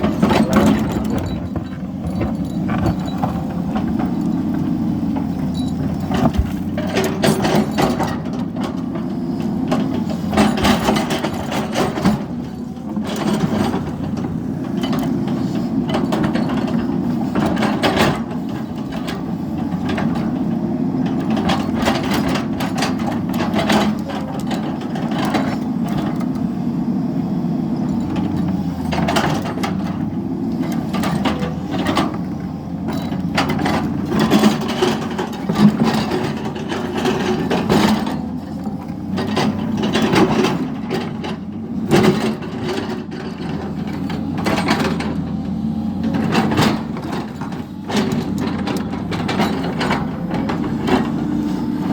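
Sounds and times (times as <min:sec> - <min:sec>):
excavator diesel engine running: 0:00.0 - 0:51.9
knocks and scrapes of demolition: 0:05.2 - 0:08.8.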